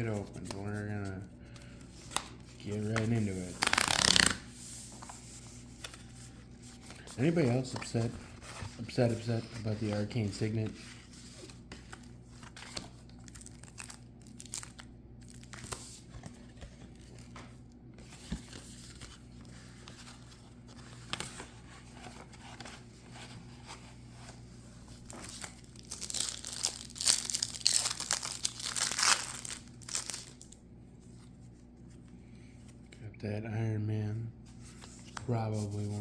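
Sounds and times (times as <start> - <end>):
packaging crinkling and tearing: 3.0 - 4.4, 12.0 - 16.0, 25.0 - 30.6.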